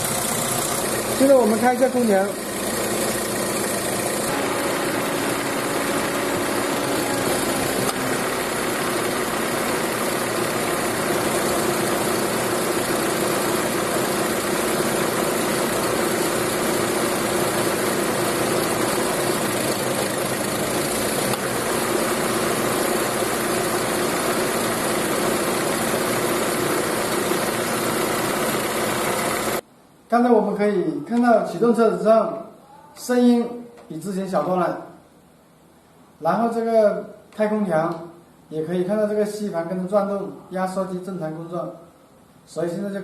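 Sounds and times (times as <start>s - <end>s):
car engine idling: 0.0s - 1.8s
air-conditioning compressor running: 0.0s - 42.8s.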